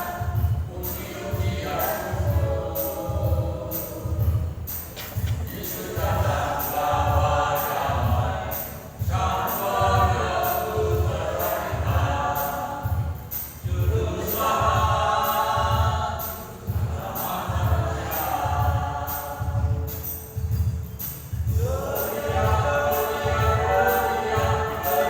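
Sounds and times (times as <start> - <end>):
choir singing a hymn: 0.0 - 25.0
rhythmic high jingle: 0.0 - 25.0
steady low beat: 0.0 - 25.0.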